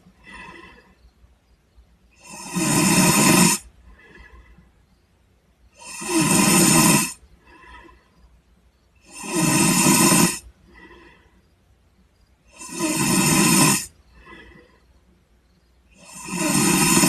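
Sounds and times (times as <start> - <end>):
faint breath out: 0.0 - 1.3, 3.6 - 5.1, 7.1 - 9.0, 10.4 - 11.8, 13.9 - 16.0
person snoring loudly: 0.1 - 0.9, 2.2 - 4.4, 5.8 - 7.9, 9.0 - 11.2, 12.5 - 14.7, 15.9 - 17.0.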